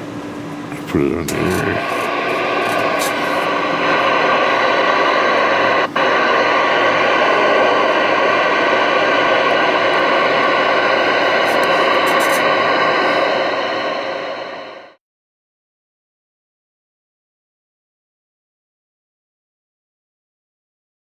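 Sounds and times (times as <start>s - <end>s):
radio static: 0.7s - 14.9s.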